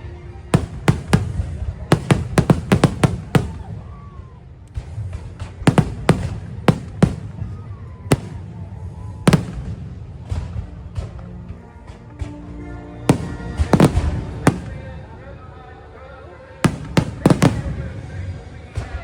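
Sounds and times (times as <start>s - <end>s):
fireworks bangs: 0.5s - 4.2s, 4.8s - 11.1s, 13.1s - 15.2s, 16.6s - 18.4s.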